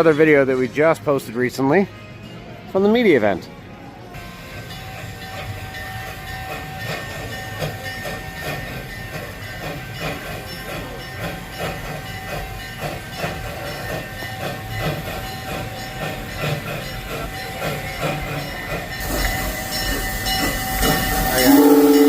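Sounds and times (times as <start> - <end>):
hiss: 4.5 - 22.0
train wheels clacking over rail joints: 4.5 - 22.0.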